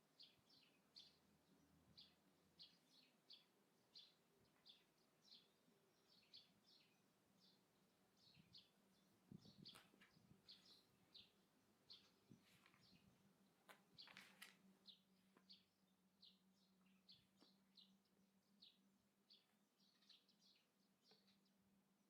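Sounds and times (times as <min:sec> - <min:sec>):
songbirds chirping: 0:00.0 - 0:22.0
soft rustle: 0:08.3 - 0:15.5.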